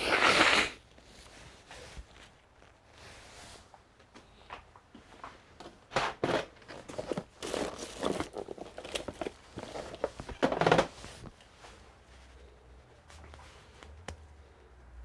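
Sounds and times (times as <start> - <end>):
crinkling and rustling handling noise: 0.8 - 14.7.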